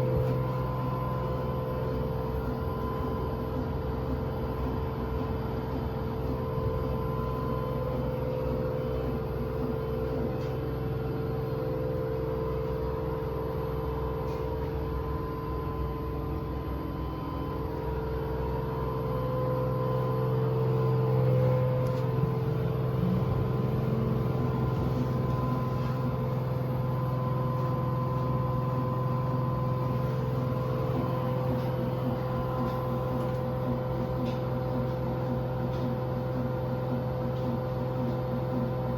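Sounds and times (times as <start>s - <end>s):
washing machine spinning: 0.0s - 38.9s.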